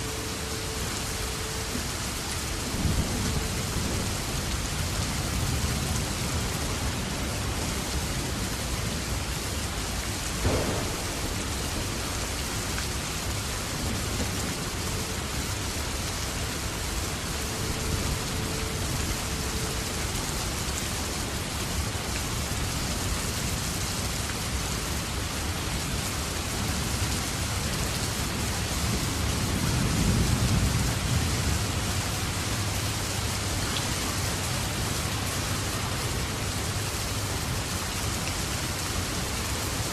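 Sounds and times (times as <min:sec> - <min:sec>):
rain pattering: 0:00.0 - 0:39.9.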